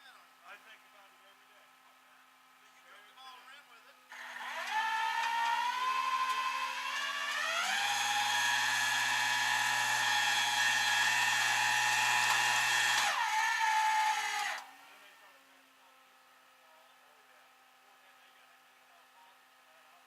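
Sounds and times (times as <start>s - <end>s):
power tool motor whining: 4.1s - 14.7s.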